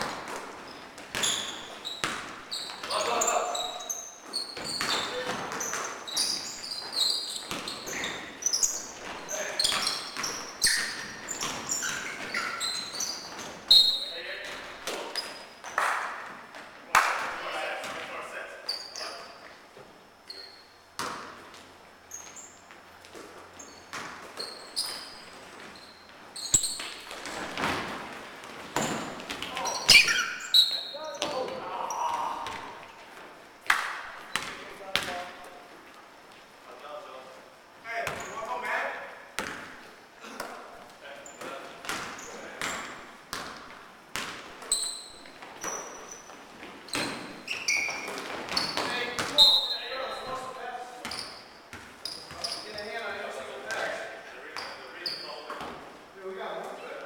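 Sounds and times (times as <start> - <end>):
sneakers squeaking on floor: 0.0 - 16.8, 17.8 - 33.3, 34.1 - 36.5, 37.4 - 56.1
basketball bouncing on court: 21.0 - 21.6, 34.2 - 35.3, 38.0 - 38.4, 39.4 - 40.5, 41.8 - 44.6, 47.9 - 49.5, 51.0 - 52.5
basketball bouncing on hardwood: 39.4 - 39.8, 41.8 - 44.5.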